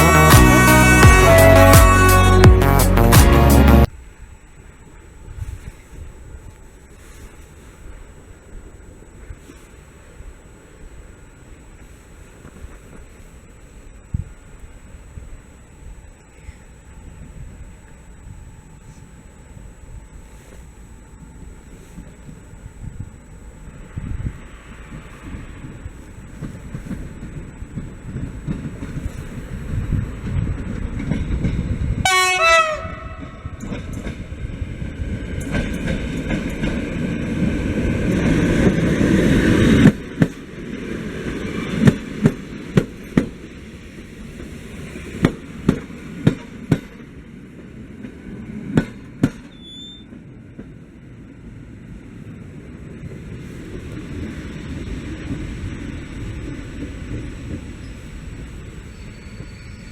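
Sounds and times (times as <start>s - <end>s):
train horn blast: 0.0s - 3.9s, 32.0s - 33.9s
train passing rumble: 0.0s - 59.9s
wheels clacking on rail joints: 26.3s - 32.2s, 33.2s - 40.8s, 44.4s - 50.8s.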